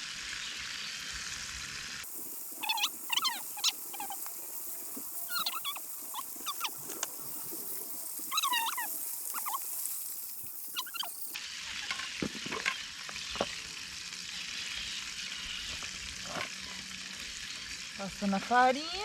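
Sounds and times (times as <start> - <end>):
hot oil sizzling in a pan: 0.0 - 19.0
insect hiss: 0.0 - 19.0
chirping animal calls: 2.1 - 11.4.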